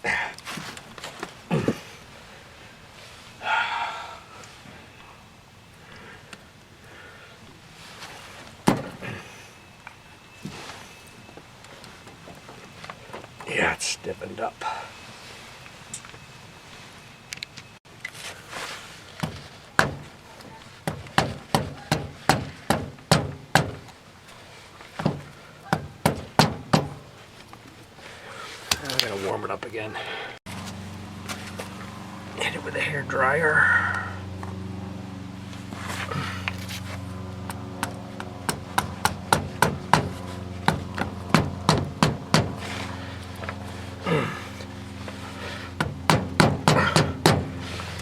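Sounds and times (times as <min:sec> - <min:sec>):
hammer blows on rubber: 0:20.8 - 0:23.8, 0:38.4 - 0:42.8, 0:45.4 - 0:48.0.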